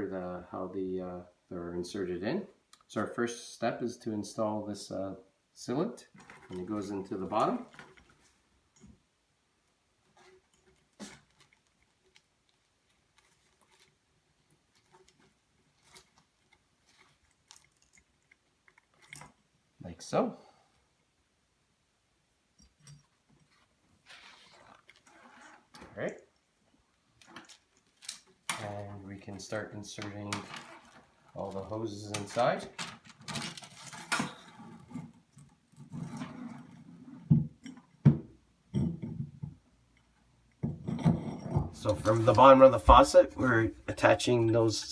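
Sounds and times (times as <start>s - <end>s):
rubber hoses rubbing: 23.5s - 25.7s.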